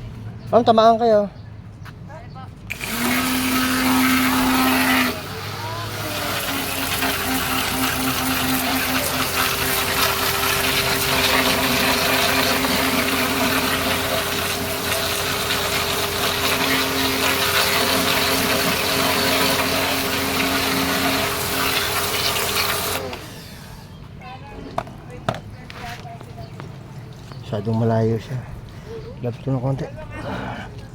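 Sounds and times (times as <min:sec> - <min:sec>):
pressure washer spraying: 0:02.7 - 0:24.0.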